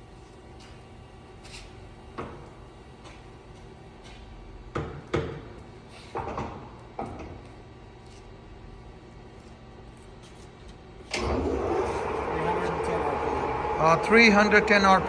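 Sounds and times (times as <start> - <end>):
lathe humming: 11.2 - 15.0.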